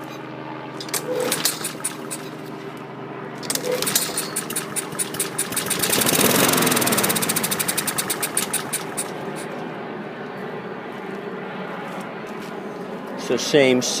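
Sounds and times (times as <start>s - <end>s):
lawn mower engine running unevenly: 0.0s - 9.6s.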